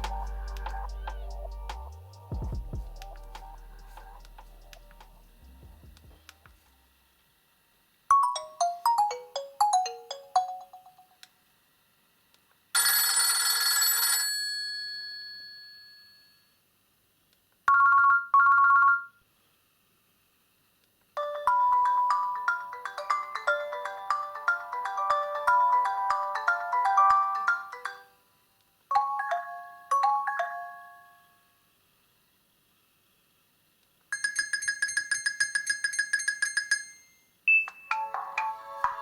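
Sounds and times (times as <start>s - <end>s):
falling ringtone notes: 0.0s - 5.7s, 8.1s - 11.1s, 21.2s - 28.2s
ringtone melody: 0.0s - 6.0s, 8.1s - 11.1s, 21.2s - 28.2s, 28.9s - 31.2s, 37.5s - 39.0s.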